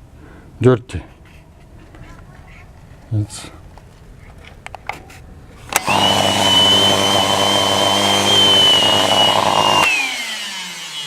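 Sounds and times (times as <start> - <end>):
vacuum cleaner motor running: 5.7 - 11.0.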